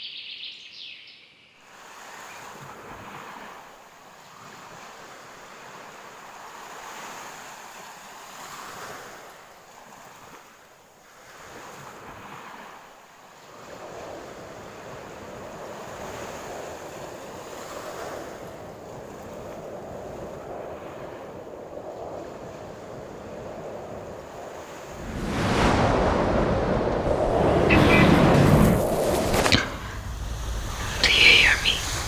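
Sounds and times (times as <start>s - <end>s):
wind: 0.0s - 32.0s
rushing water: 23.5s - 32.0s.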